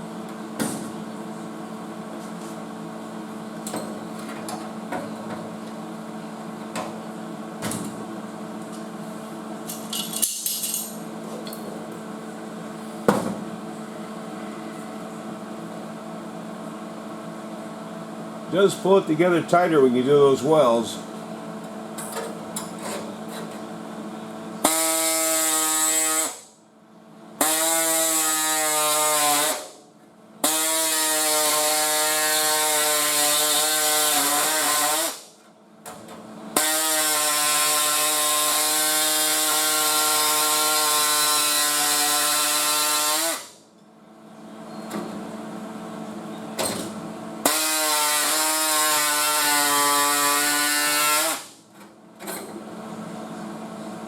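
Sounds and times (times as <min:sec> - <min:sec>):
power grinder on sheet metal: 0:24.6 - 0:26.4, 0:27.4 - 0:29.7, 0:30.4 - 0:35.2, 0:36.6 - 0:43.5, 0:47.4 - 0:51.5.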